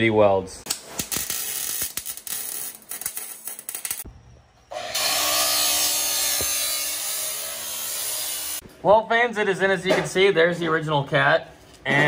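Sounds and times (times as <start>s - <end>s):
crackling and clicks: 0.7s - 4.1s.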